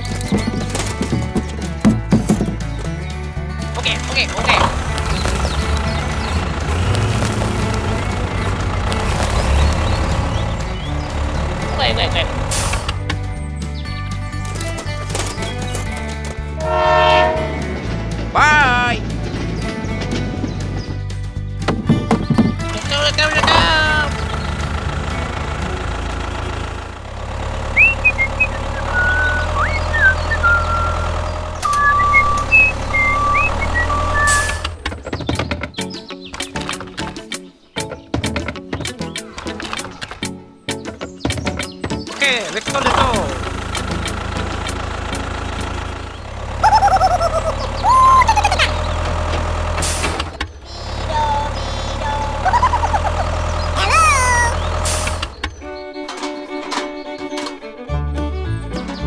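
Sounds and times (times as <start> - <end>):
vehicle engine humming: 0.0 - 59.0
high chirps and whistles: 27.7 - 34.7, 46.6 - 49.0
cartoon-like warbling tones: 46.6 - 48.8, 50.7 - 54.7.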